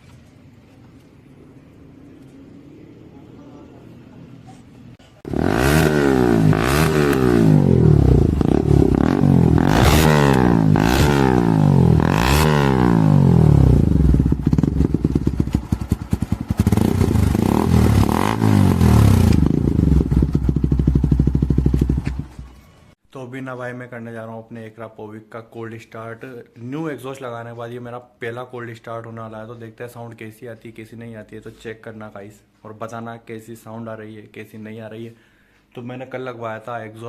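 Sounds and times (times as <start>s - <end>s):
motorcycle engine revving: 5.2s - 22.8s.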